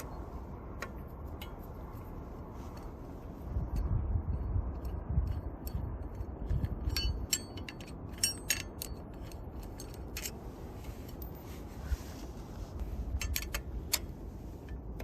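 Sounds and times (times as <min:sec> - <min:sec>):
low rumble: 0:00.0 - 0:07.3.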